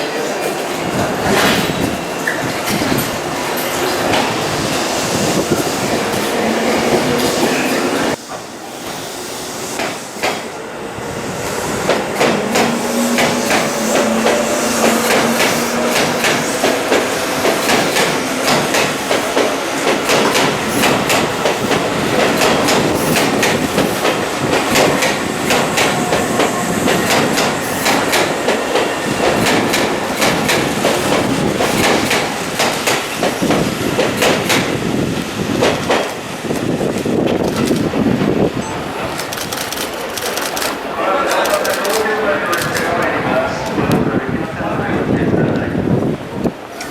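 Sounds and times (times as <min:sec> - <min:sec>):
train motor whine: 0:11.6 - 0:32.5
train wheels clattering: 0:11.7 - 0:38.4.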